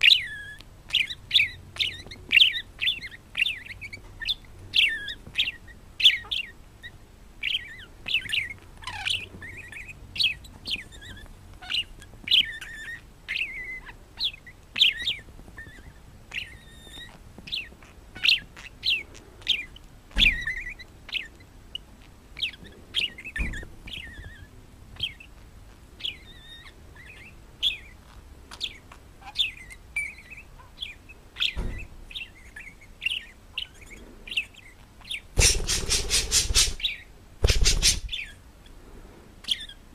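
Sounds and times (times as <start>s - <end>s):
parrot chirping: 0.0s - 25.4s, 26.0s - 38.4s
dull thumps: 37.4s - 38.2s.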